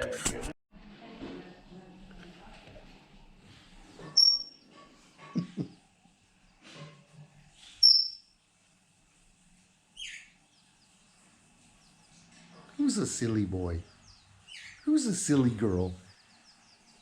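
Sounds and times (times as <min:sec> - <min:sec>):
bird chirping: 0:04.2 - 0:04.7, 0:07.6 - 0:08.4, 0:10.0 - 0:17.0.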